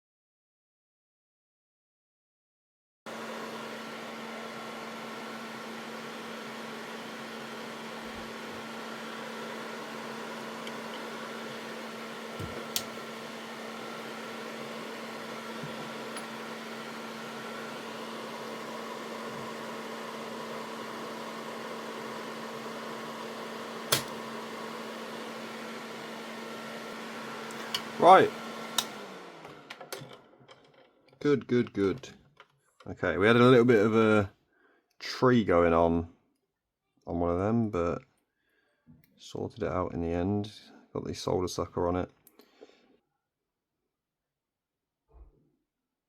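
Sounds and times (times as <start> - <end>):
sharp clicks: 23.9 - 24.2.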